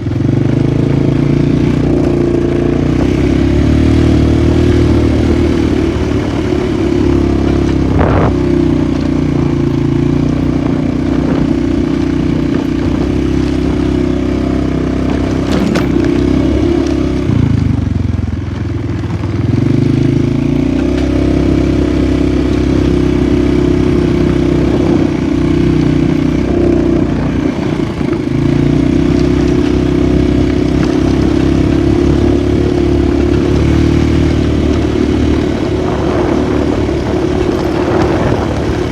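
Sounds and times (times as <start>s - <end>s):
quad bike engine running: 0.0s - 38.9s.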